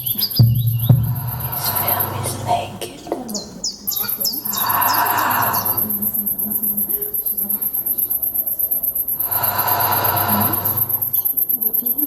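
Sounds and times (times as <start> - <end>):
insects chirping high-pitched: 0.0 - 2.6, 3.3 - 12.0
rushing noise: 1.0 - 2.6, 9.1 - 11.2.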